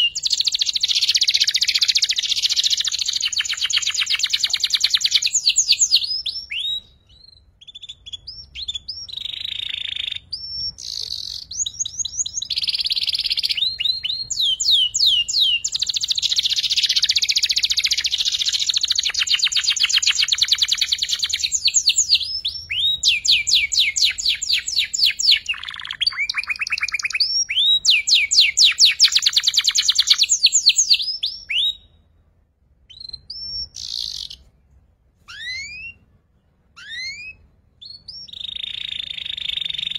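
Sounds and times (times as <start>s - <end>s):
canary singing fast trills: 0.0s - 32.1s, 32.7s - 34.5s, 35.2s - 39.9s.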